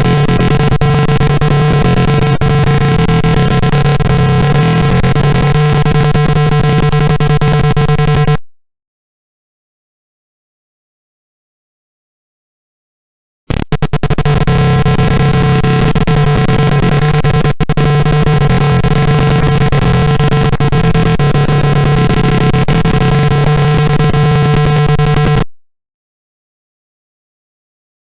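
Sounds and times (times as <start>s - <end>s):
fire alarm buzzer: 0.0s - 8.4s, 13.5s - 25.4s.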